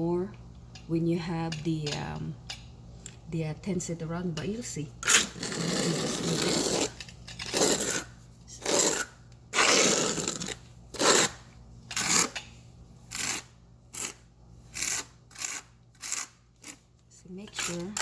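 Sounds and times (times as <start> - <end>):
trowel scraping wet mortar: 5.0 - 12.4, 13.1 - 14.2, 14.8 - 16.8.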